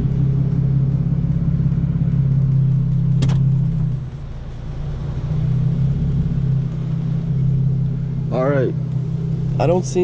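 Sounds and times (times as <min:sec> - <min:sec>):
car exhaust droning at low revs: 0:00.0 - 0:10.0
sharp click: 0:03.2 - 0:03.5.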